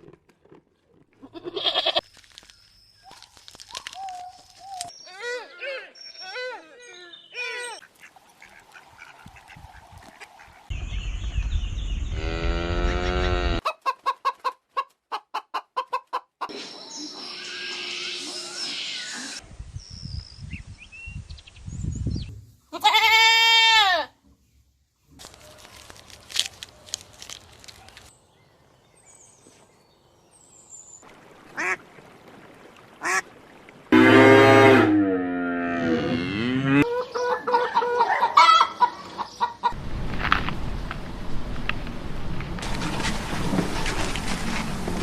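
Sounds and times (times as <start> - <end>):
poultry clucking: 7.9 - 10.6, 13.0 - 16.5, 36.8 - 39.8
loud drawn-out poultry calls: 34.0 - 39.8.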